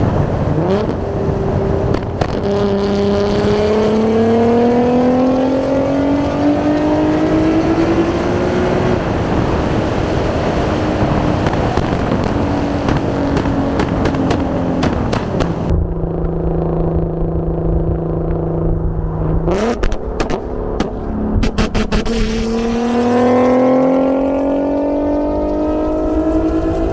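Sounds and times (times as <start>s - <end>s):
exhaust pops and crackles: 0.0s - 4.4s, 8.8s - 22.4s
car engine revving: 0.0s - 26.9s.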